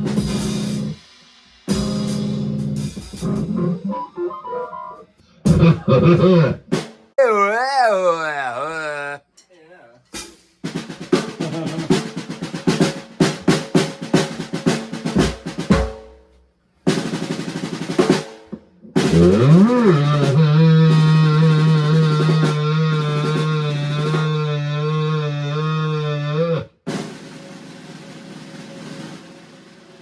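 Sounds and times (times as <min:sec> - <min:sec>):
snare drum rolls: 0:10.2 - 0:16.3, 0:16.9 - 0:20.4, 0:26.9 - 0:30.0.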